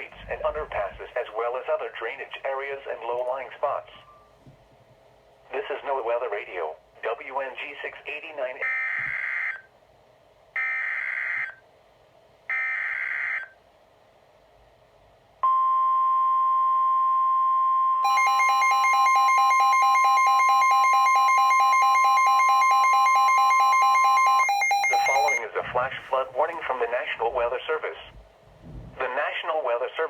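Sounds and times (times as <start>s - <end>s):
steady warning alarm tone: 8.6s - 9.7s, 10.6s - 11.6s, 12.5s - 13.6s, 15.4s - 27.0s
lower alarm tone: 15.4s - 25.4s.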